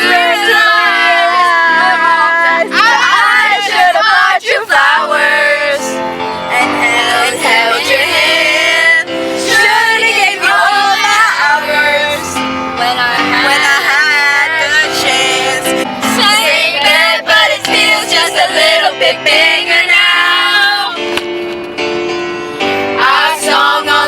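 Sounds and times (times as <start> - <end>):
pop love song: 0.0 - 21.1, 22.8 - 24.0.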